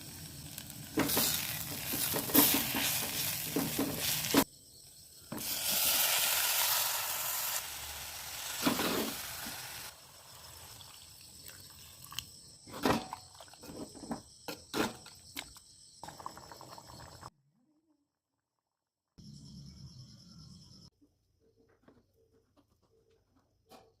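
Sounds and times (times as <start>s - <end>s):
chicken sizzling in a frying pan: 0.0s - 4.5s, 5.3s - 11.1s.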